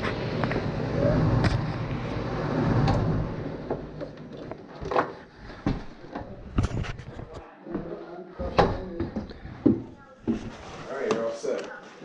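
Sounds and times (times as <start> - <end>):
low machine hum: 0.0 - 4.4.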